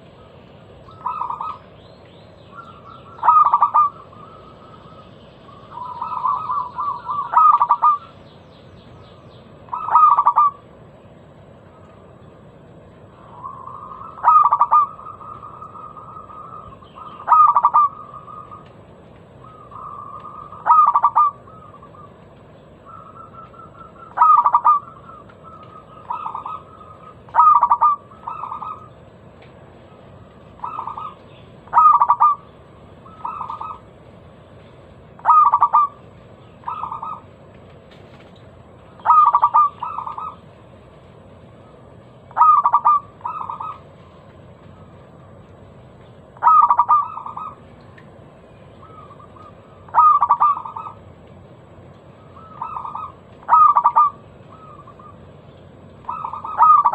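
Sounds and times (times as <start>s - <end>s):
zebra dove cooing: 0.0s - 1.8s, 2.5s - 8.2s, 9.7s - 10.6s, 13.2s - 22.2s, 22.8s - 28.9s, 30.5s - 33.9s, 35.2s - 36.0s, 36.6s - 37.3s, 39.0s - 40.5s, 42.3s - 45.0s, 46.4s - 47.8s, 48.8s - 51.1s, 52.2s - 55.3s, 56.0s - 56.9s
steady low hiss: 0.0s - 56.9s.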